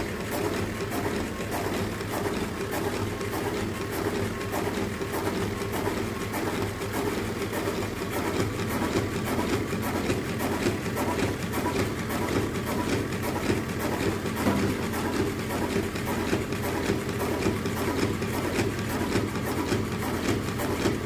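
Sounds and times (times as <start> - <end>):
filling machine humming: 8.7 - 21.0.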